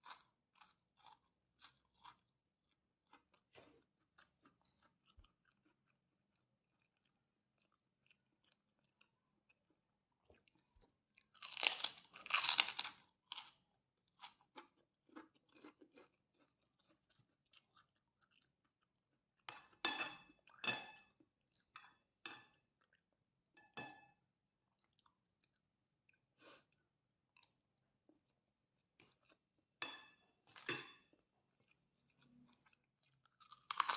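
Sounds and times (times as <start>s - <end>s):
crunchy chewing: 0.0s - 19.0s, 31.6s - 33.9s.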